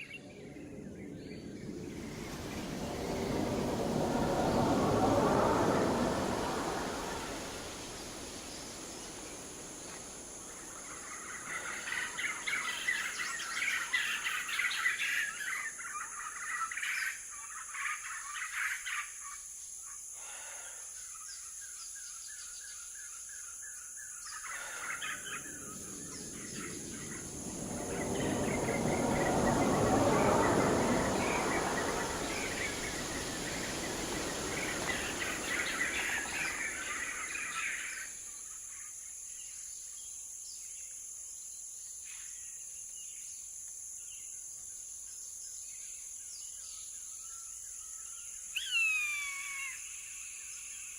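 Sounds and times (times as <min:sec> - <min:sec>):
birds chirping: 0:00.0 - 0:15.9, 0:24.3 - 0:38.4
steady high hiss: 0:00.0 - 0:16.8, 0:24.3 - 0:42.2
broad rushing noise: 0:00.2 - 0:13.6, 0:25.2 - 0:38.2.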